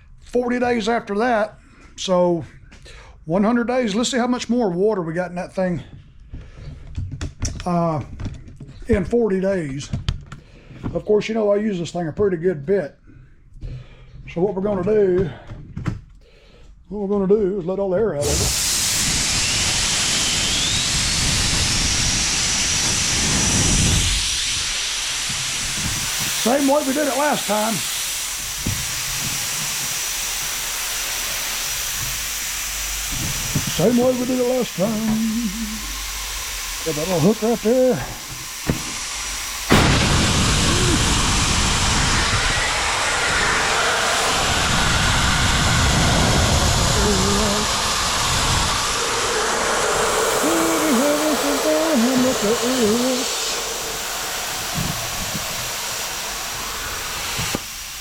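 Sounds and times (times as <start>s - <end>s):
compressed air hissing: 18.2s - 58.0s
faint whistle rising in pitch: 19.2s - 23.0s, 40.5s - 57.5s.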